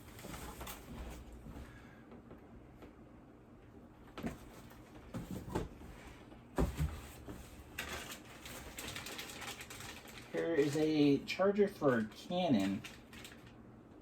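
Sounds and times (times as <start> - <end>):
knocks and clunks of items: 4.2 - 5.9, 6.6 - 8.1
packaging rustling: 7.6 - 11.2, 12.0 - 13.6.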